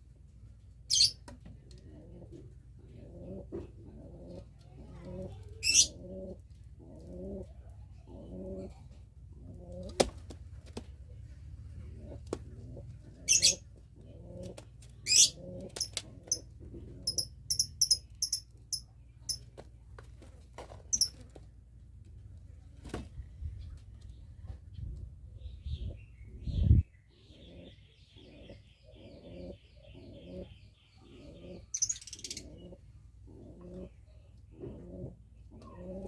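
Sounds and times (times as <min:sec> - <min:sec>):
pigeon cooing: 0:00.9 - 0:10.0, 0:11.8 - 0:18.4, 0:27.1 - 0:36.0.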